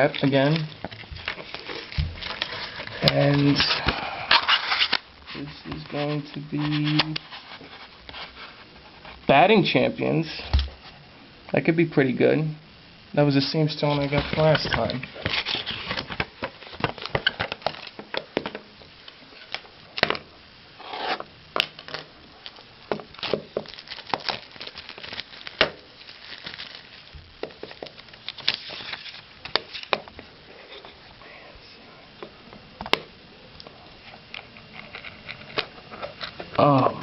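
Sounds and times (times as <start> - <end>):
plastic packaging crinkling: 0.0 - 8.7, 13.8 - 18.6, 21.5 - 31.0.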